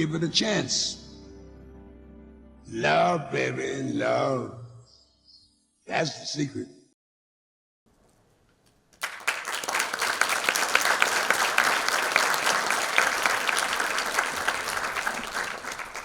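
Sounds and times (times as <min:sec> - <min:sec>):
audience applauding: 0:09.0 - 0:16.0.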